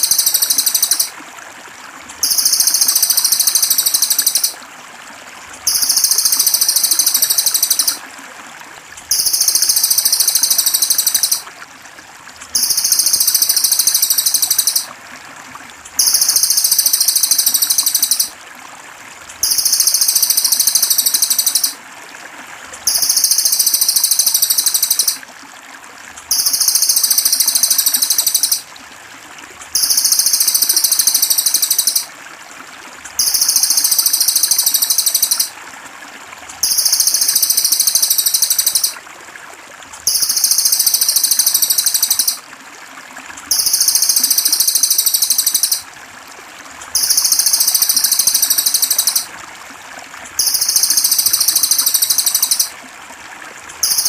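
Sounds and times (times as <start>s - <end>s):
trickling water: 0.0s - 54.0s
high-pitched songbird trilling: 9.1s - 11.4s, 12.6s - 14.9s, 16.0s - 18.3s, 19.4s - 21.8s, 26.3s - 28.6s, 29.8s - 32.1s.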